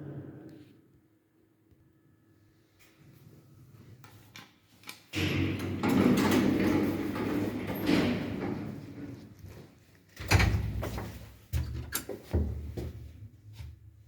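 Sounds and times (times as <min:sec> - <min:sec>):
sliding lift doors running: 0:05.2 - 0:09.4.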